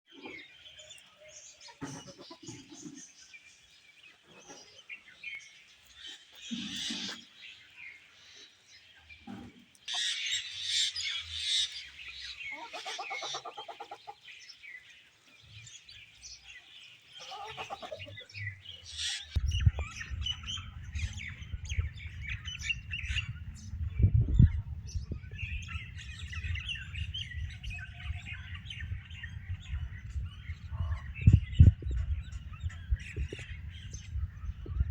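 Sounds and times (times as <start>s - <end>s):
birds chirping and tweeting: 0.1s - 34.9s
bird squawk: 12.4s - 14.2s, 17.2s - 18.3s
low rumbling noise: 18.3s - 34.9s.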